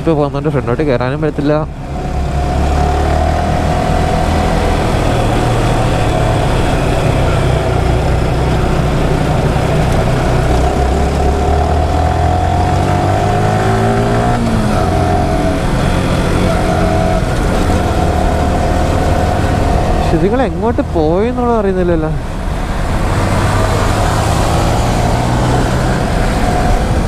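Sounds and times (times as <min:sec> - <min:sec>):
motorcycle engine running: 0:00.0 - 0:27.0
wind over microphone: 0:21.4 - 0:27.0.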